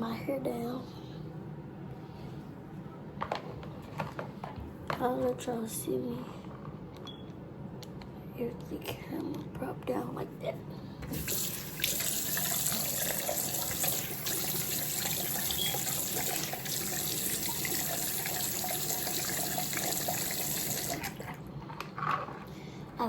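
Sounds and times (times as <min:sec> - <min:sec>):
water running from tap: 0:11.1 - 0:21.4.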